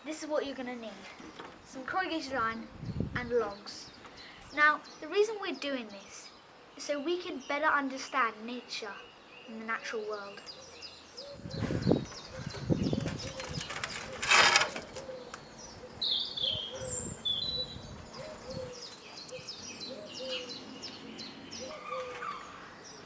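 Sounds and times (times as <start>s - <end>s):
birds singing: 0.4s - 23.0s
rustling: 11.7s - 15.5s
loud rustle or scrape: 12.4s - 15.1s.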